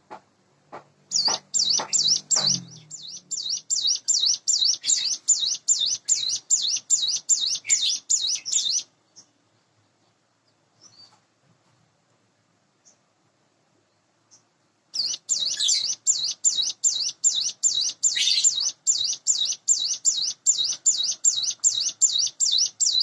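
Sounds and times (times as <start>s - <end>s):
bird singing high swooping notes: 1.1s - 8.9s, 15.0s - 23.0s
faint bird chirps: 1.1s - 11.2s, 13.8s - 23.0s.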